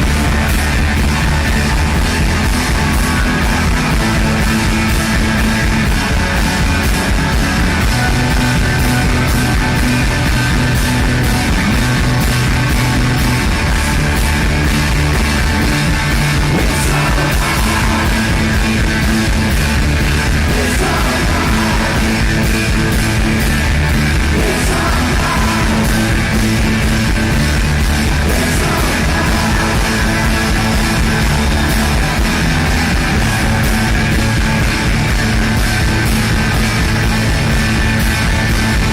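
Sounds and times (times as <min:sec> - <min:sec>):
guitars: 0:00.0 - 0:38.9
drum beat: 0:13.9 - 0:38.9
person singing: 0:16.5 - 0:18.8, 0:20.3 - 0:22.8, 0:24.1 - 0:26.9, 0:28.0 - 0:33.8.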